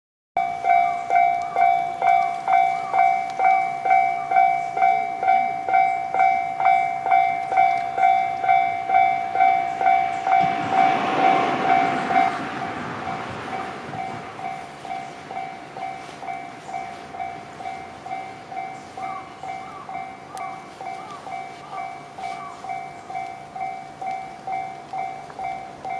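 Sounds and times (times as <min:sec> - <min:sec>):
level-crossing two-tone bell: 0:00.4 - 0:25.9
train passing: 0:00.4 - 0:25.9.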